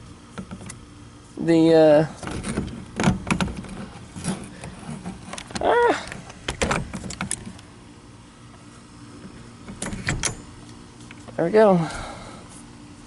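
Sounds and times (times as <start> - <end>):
clicks and knocks of parts fitted: 5.3 - 7.6.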